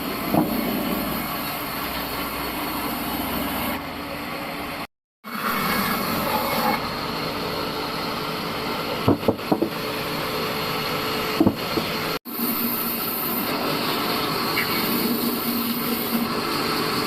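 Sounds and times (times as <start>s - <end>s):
short knocks: 9.1s - 9.8s, 11.4s - 11.9s.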